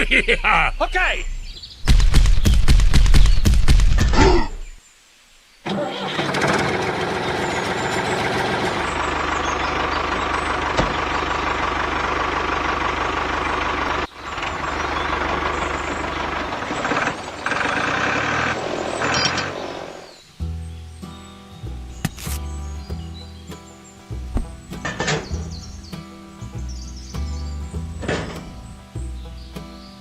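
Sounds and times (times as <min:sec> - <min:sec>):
heavy vehicle engine running: 0:05.7 - 0:20.2.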